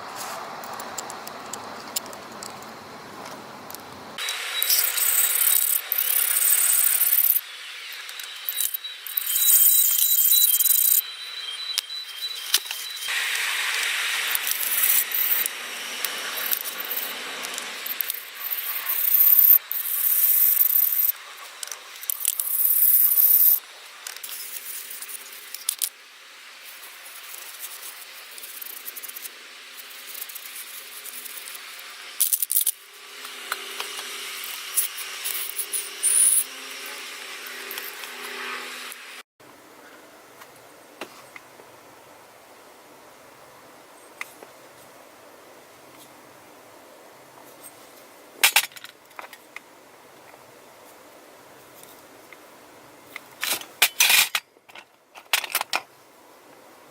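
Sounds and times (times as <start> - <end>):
metal parts and tools clinking: 4.2 - 13.1, 14.3 - 25.9, 32.2 - 32.8, 33.5 - 38.3, 53.4 - 55.8
short bursts of hiss: 12.6 - 21.5.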